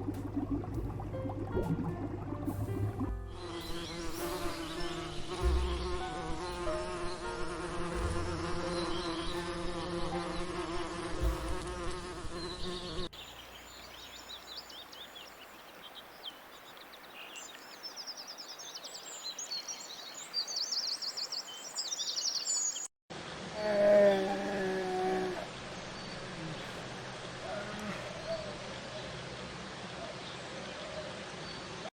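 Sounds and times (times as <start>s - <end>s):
flying insect buzzing: 3.3s - 13.1s.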